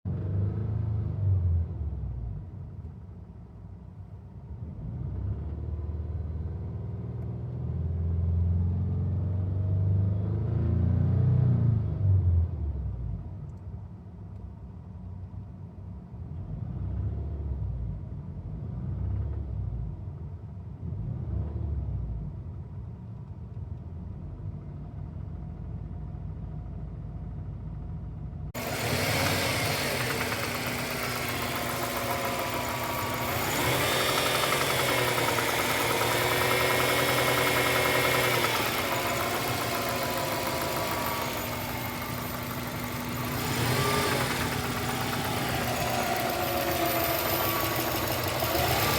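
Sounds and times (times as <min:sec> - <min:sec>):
car engine knocking and revving: 0:27.8 - 0:48.9.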